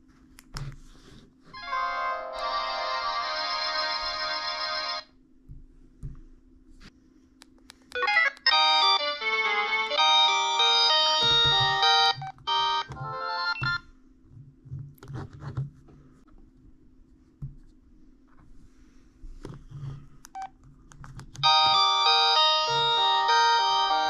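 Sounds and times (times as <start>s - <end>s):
phone ringtone melody: 8.0s - 13.8s, 21.4s - 24.0s.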